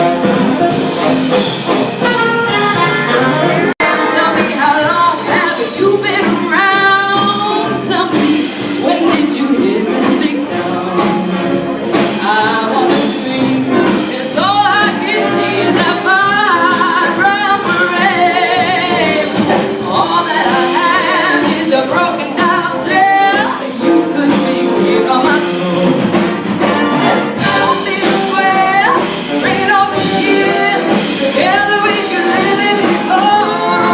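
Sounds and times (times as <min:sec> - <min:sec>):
lead melody with vibrato: 0:00.0 - 0:07.8
big band swing music: 0:00.0 - 0:33.9.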